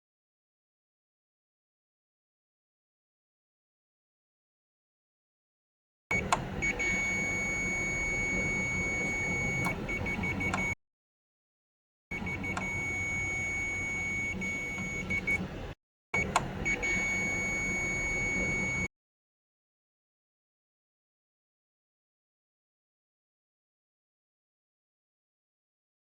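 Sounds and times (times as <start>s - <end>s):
high-pitched electronic beep: 6.1s - 10.8s, 12.1s - 15.4s, 16.7s - 18.9s
low machinery noise: 6.1s - 10.8s.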